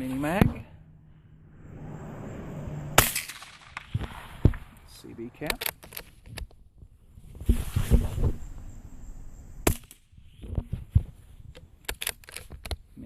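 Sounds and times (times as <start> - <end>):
quiet rifle shot: 2.9 - 4.8.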